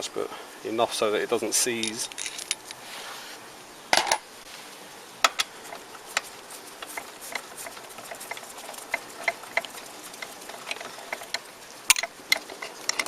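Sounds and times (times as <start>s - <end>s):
metal tools clinking: 1.7s - 2.8s, 6.9s - 13.0s.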